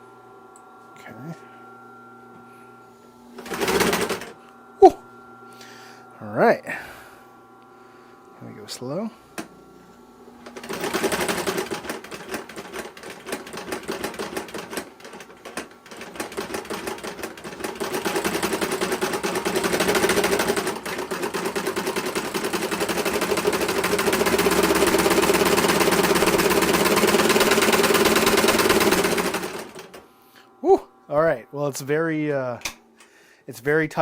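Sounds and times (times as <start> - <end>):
sewing machine stitching: 3.4 - 4.4, 10.4 - 30.0.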